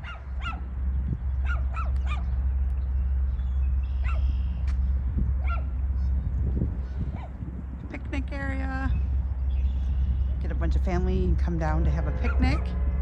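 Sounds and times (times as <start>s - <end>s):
steady low rumble: 0.0s - 13.0s
short bird calls: 3.4s - 4.8s.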